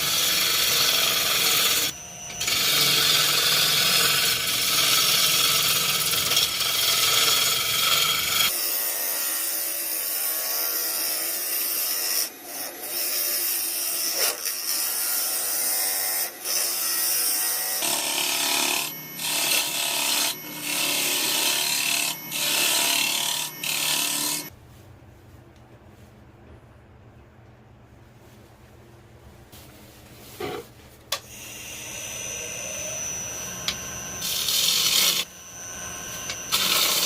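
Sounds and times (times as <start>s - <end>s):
tool sanding wood: 0.0s - 8.6s, 16.5s - 24.5s, 31.2s - 37.0s.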